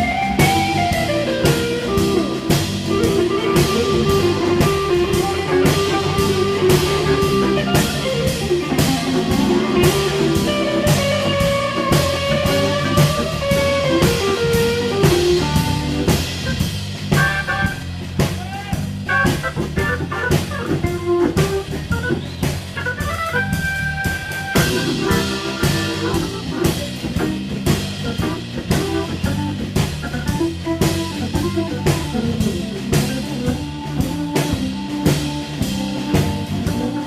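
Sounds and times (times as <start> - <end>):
lead melody line: 0.0 - 18.2, 18.9 - 37.0
electric guitar: 0.0 - 18.4, 19.0 - 37.0
drum kit steady beat: 0.0 - 37.0
hammond organ: 0.0 - 37.0.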